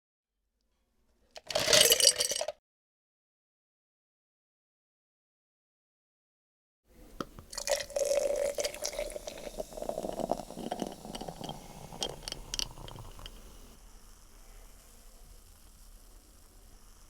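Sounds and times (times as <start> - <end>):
beer pouring into glass: 1.6 - 2.5, 7.2 - 13.8
beer fizzing: 7.2 - 13.8.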